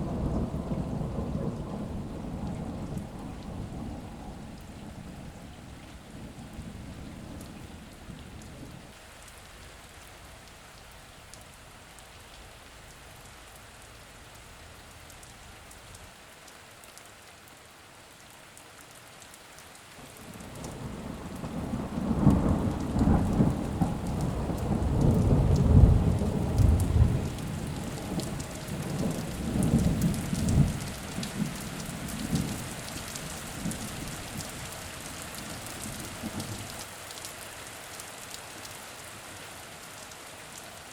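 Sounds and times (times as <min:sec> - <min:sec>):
rolling thunder: 0:00.0 - 0:08.9, 0:20.4 - 0:32.7
steady rain: 0:00.0 - 0:40.9.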